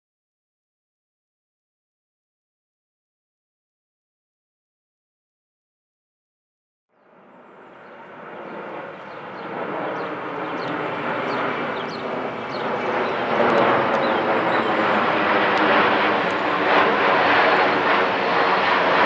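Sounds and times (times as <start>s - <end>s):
jet engines rushing: 7.1s - 19.0s.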